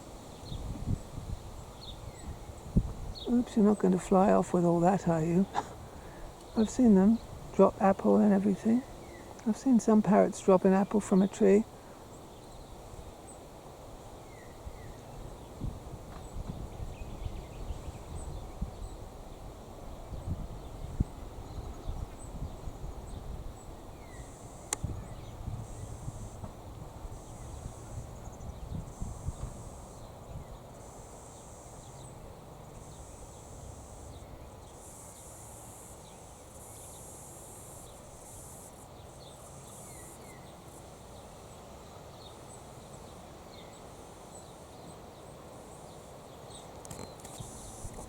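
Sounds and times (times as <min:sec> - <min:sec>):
wind rumble on microphone: 0:00.0 - 0:11.7, 0:13.9 - 0:30.8
insect buzzing in pulses: 0:47.2 - 0:48.0.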